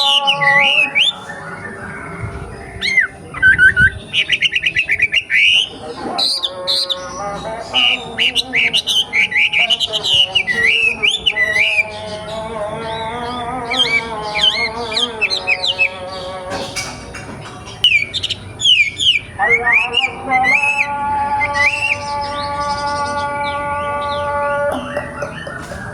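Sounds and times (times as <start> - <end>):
bird singing whistled phrases: 0.0 - 5.7, 17.8 - 22.0.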